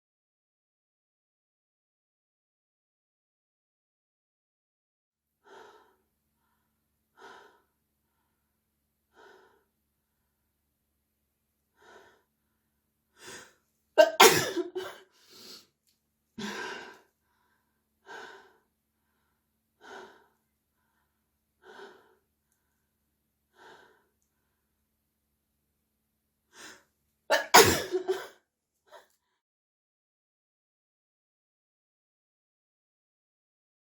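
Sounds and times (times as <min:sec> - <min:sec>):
man sneezing: 0:14.0 - 0:14.7, 0:27.3 - 0:28.3.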